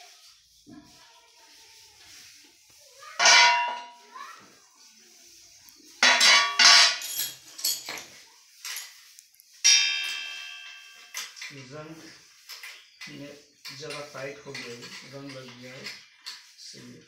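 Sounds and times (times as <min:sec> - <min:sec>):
metal parts clanging: 0:03.2 - 0:03.9, 0:06.0 - 0:09.0.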